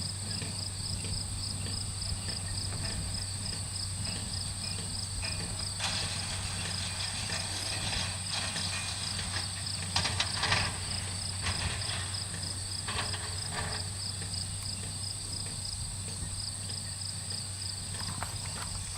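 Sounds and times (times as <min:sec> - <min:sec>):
crickets chirping: 0:00.0 - 0:18.9.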